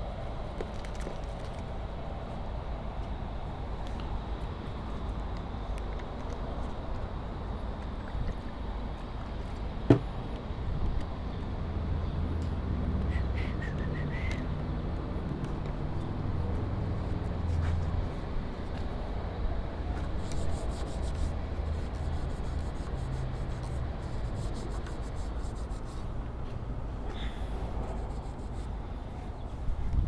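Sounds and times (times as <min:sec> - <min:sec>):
hand scrubbing strokes: 0:20.3 - 0:26.1.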